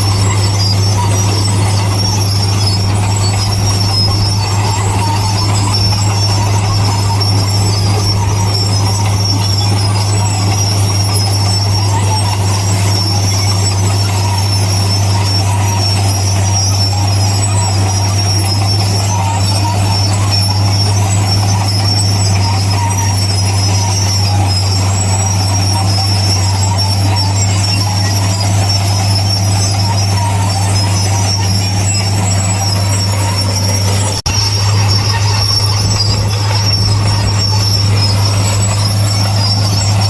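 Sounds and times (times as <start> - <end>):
heavy diesel machinery droning: 0.0 - 40.0.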